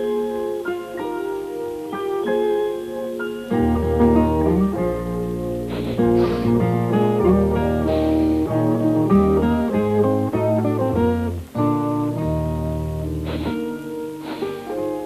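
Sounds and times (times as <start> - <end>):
plucked guitar tune: 0.0 - 15.0
bass line: 4.3 - 11.5.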